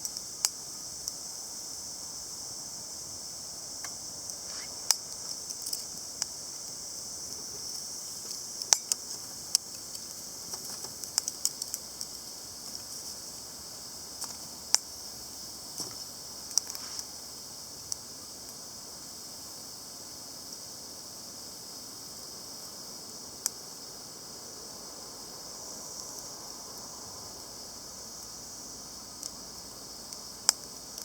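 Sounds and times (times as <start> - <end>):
fire hissing: 0.0 - 18.4
wood fire crackling and popping: 3.8 - 13.4, 14.2 - 14.9, 30.1 - 31.0.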